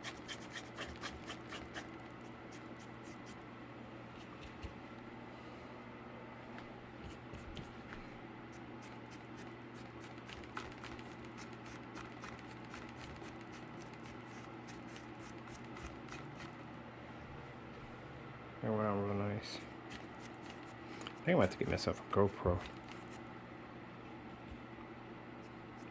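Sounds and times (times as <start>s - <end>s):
steady low hum: 0.0s - 25.9s
light ticks and scratches: 8.8s - 16.6s, 19.9s - 23.2s.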